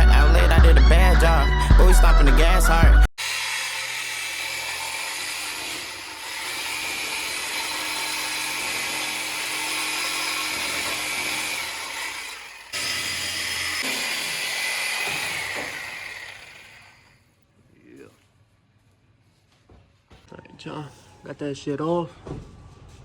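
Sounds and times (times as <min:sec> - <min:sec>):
power tool cutting steel pipe: 0:03.2 - 0:17.2.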